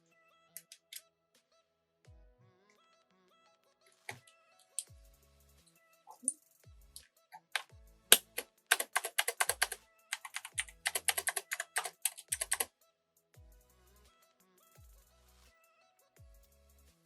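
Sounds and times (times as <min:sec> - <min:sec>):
quiet background music: 0:00.0 - 0:17.0
keyboard typing clicks: 0:07.6 - 0:12.7.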